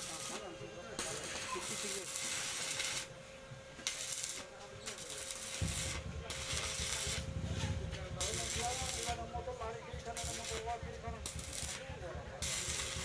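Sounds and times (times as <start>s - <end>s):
rhythmic rasping scraping strokes: 3.8s - 13.0s
low rumble: 5.6s - 12.5s.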